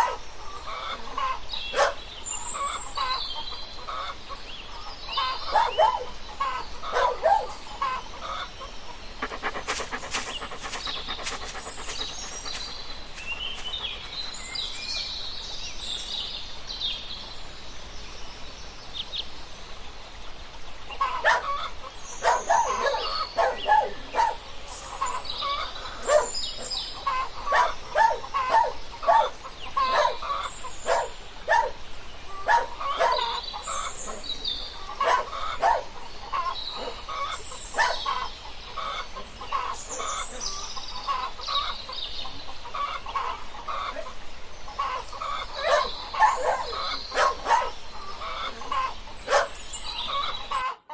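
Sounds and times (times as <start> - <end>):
chickens clucking: 9.2 - 15.2.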